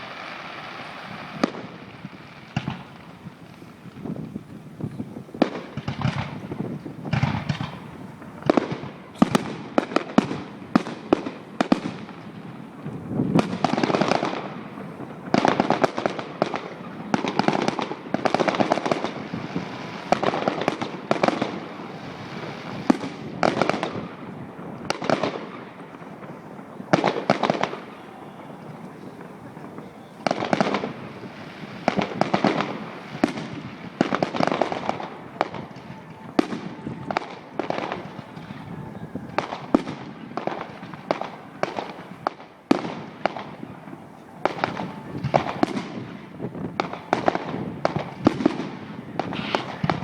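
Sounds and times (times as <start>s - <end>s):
fireworks bangs: 0.0s - 50.0s
fireworks crackling: 0.0s - 50.0s.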